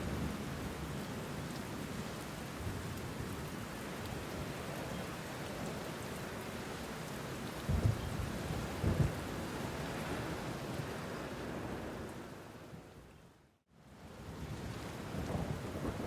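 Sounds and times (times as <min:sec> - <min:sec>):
steady rain: 0:00.0 - 0:16.0
thunder rumbles: 0:07.7 - 0:09.3, 0:15.1 - 0:16.0.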